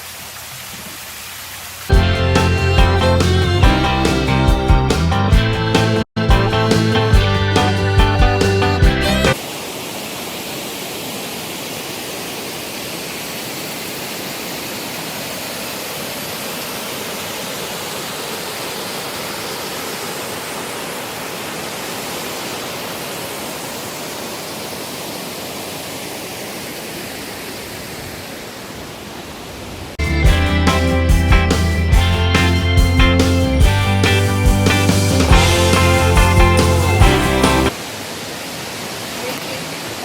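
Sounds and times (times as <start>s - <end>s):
waterfall rushing: 0.0s - 30.0s, 30.7s - 40.0s
background music: 1.9s - 9.4s, 30.0s - 37.7s.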